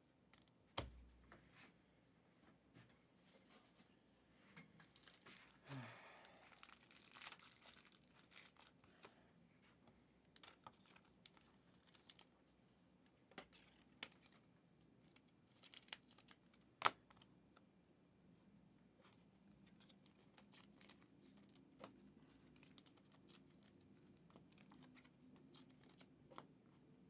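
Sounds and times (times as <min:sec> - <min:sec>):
wrappers tearing and crinkling: 0:04.8 - 0:05.7, 0:06.4 - 0:09.0, 0:10.4 - 0:12.3
cards being handled: 0:19.1 - 0:26.5.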